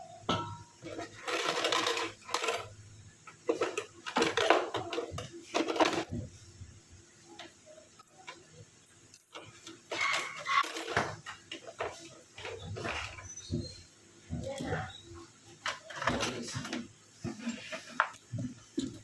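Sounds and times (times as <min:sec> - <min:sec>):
clattering and handling noises: 0:00.0 - 0:06.7, 0:07.4 - 0:19.0.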